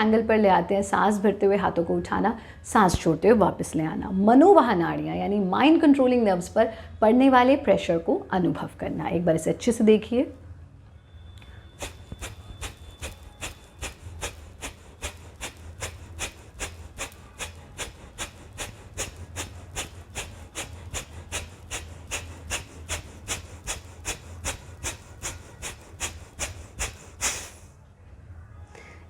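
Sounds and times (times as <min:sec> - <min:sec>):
sharp forceful breath exhalations: 0:11.4 - 0:27.8.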